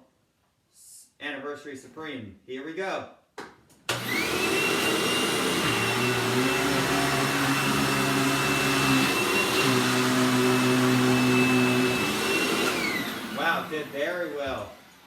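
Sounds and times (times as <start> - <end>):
vacuum cleaner motor whining: 3.9 - 15.0.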